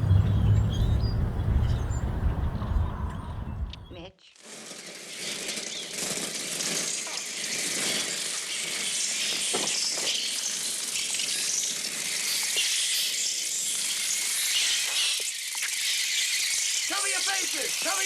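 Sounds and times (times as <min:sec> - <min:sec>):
flock of birds chattering: 0:00.0 - 0:04.1.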